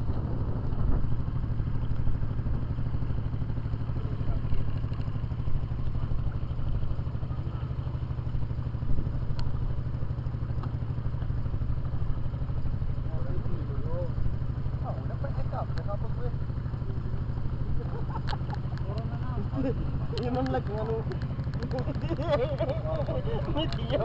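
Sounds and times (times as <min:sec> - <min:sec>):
small engine droning: 0:00.0 - 0:24.0
light clicks: 0:20.0 - 0:24.0.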